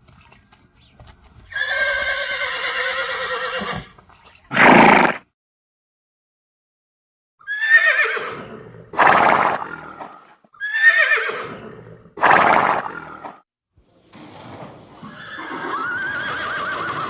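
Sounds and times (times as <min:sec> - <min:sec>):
horse whinnying: 0:01.5 - 0:05.2, 0:07.4 - 0:13.3, 0:13.9 - 0:17.0
horse breathy blow: 0:04.5 - 0:05.2.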